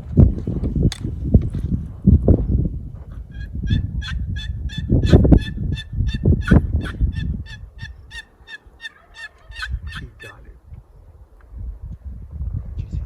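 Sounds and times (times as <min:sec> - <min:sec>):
low rumbling handling noise: 0:00.0 - 0:08.1
turkey call yelping: 0:03.3 - 0:10.4.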